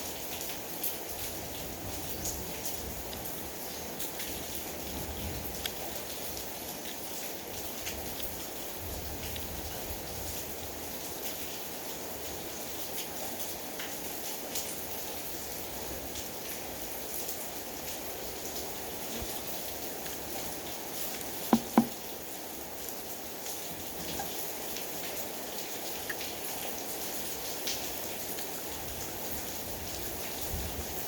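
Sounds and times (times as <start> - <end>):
steady rain falling: 0.0 - 31.0
sharp knocks: 21.5 - 22.0.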